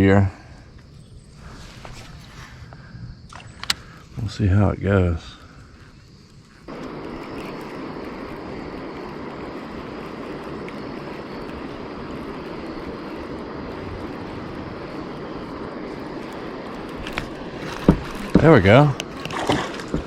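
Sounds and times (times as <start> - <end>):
steady rushing noise: 6.4 - 20.0.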